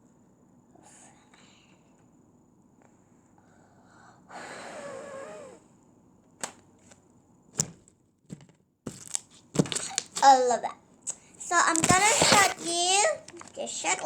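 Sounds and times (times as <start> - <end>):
child sighing: 3.8 - 5.6.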